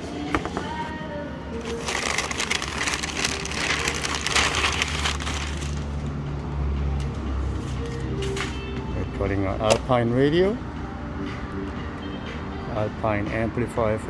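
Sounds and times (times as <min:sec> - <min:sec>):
crackling rustling handling noise: 0:01.5 - 0:06.2, 0:07.0 - 0:08.8.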